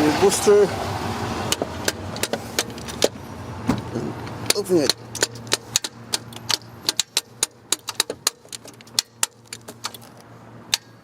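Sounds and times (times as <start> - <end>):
metallic clicks and clinks: 4.4 - 11.0.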